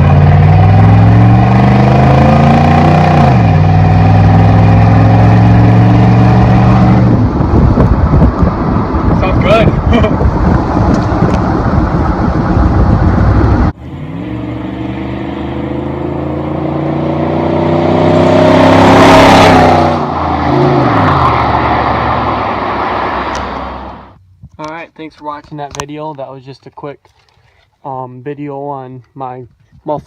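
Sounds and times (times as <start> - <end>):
loud truck exhaust: 0.0 - 9.2
truck accelerating past: 10.4 - 24.2.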